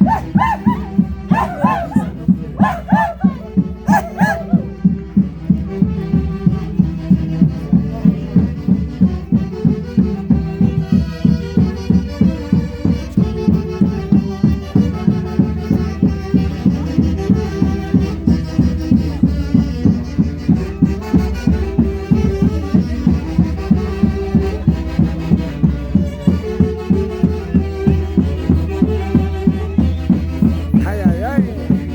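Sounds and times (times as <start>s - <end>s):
folk orchestra playing festive music: 2.1s - 31.9s.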